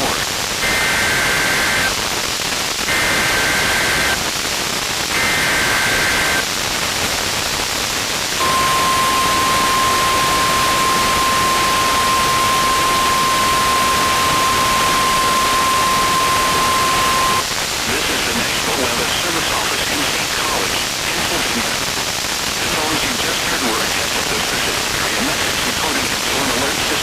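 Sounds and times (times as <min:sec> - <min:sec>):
static hiss: 0:00.0 - 0:27.0
steady alarm tone: 0:08.4 - 0:17.5
warbling data bursts: 0:08.4 - 0:17.5.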